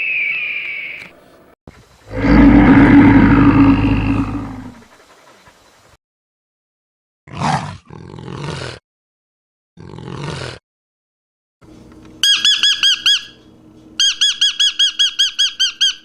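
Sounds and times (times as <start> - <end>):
large animal roaring: 2.1 - 4.8, 7.3 - 8.8, 9.8 - 10.6.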